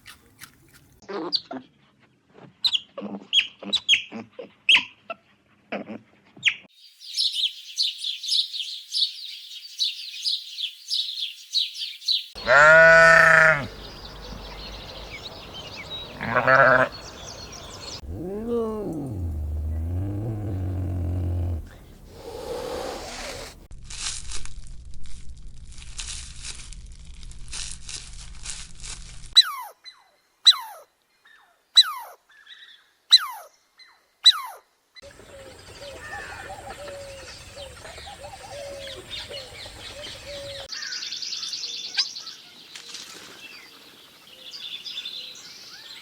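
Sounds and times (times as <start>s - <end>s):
high chirping: 12.4s - 18.3s
loud short falling calls: 12.4s - 23.7s
low animal call: 12.4s - 23.7s.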